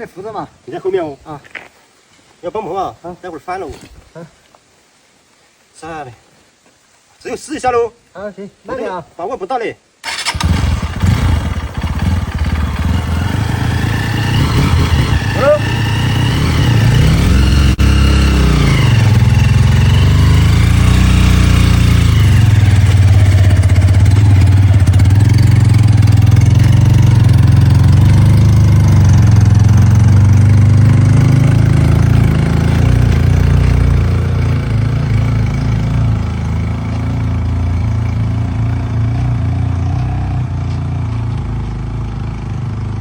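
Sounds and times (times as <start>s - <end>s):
motorcycle engine revving under load: 10.1s - 43.0s.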